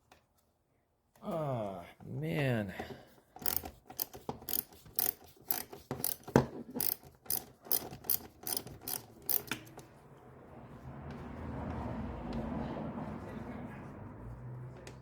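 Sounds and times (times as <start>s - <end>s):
socket ratchet clicking: 3.4s - 9.9s.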